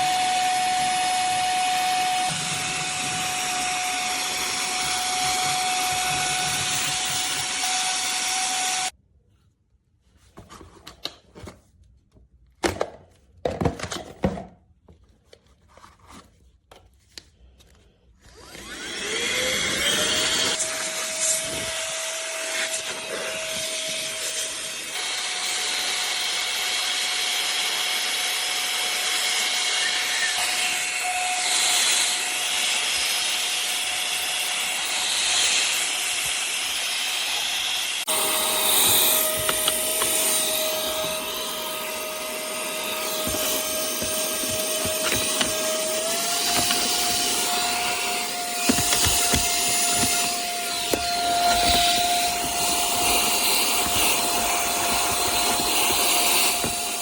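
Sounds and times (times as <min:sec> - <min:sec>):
handheld vacuum motor whine: 0:00.0 - 0:08.9, 0:18.2 - 0:57.0
handling clicks and knocks: 0:38.1 - 0:57.0.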